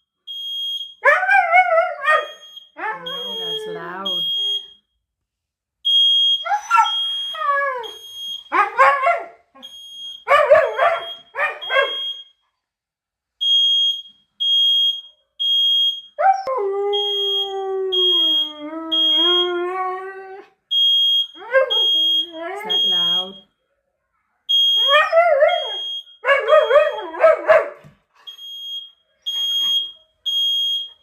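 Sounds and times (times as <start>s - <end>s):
smoke alarm beeping: 0.0s - 1.0s, 2.1s - 5.0s, 5.8s - 8.6s, 9.6s - 12.4s, 13.4s - 16.2s, 16.9s - 19.6s, 20.7s - 23.5s, 24.5s - 27.1s, 28.3s - 31.0s
dog howling and yelping: 1.0s - 4.1s, 6.4s - 9.2s, 10.3s - 12.0s, 24.8s - 27.6s.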